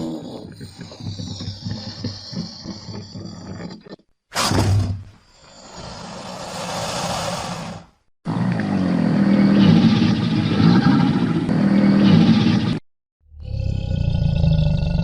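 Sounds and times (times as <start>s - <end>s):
crocodile growling: 0.0s - 4.1s, 13.4s - 15.0s.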